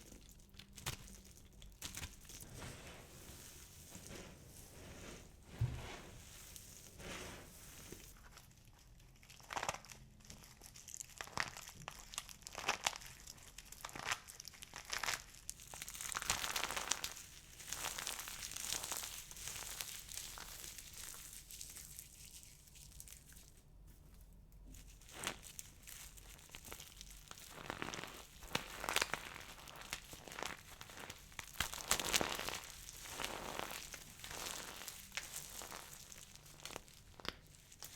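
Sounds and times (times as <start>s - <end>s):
soap balls crushed by hand: 0.0s - 2.5s, 9.4s - 23.5s, 24.6s - 37.9s.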